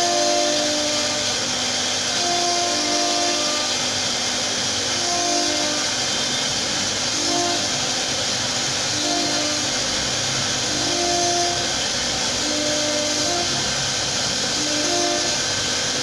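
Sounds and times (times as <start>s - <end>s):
router spindle hiss: 0.0s - 16.0s
stepper motors whining: 0.0s - 16.0s.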